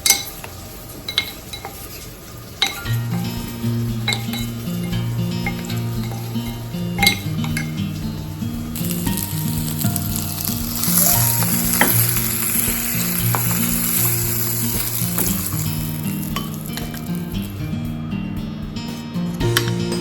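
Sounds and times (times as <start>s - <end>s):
chicken sizzling in oil: 0.0s - 17.7s
utensil tapping pan: 2.6s - 18.0s.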